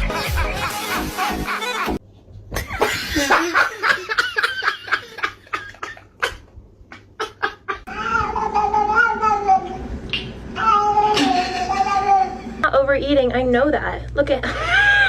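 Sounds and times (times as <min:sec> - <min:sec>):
person laughing: 0:00.0 - 0:08.0, 0:14.4 - 0:15.0
cat yowling: 0:07.9 - 0:09.8, 0:10.6 - 0:12.4.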